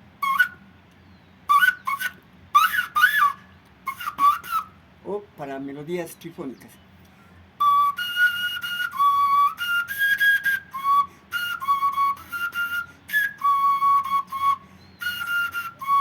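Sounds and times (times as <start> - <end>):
cane whistle three-tone melody: 0.2 - 0.6, 1.5 - 4.7, 7.6 - 16.0.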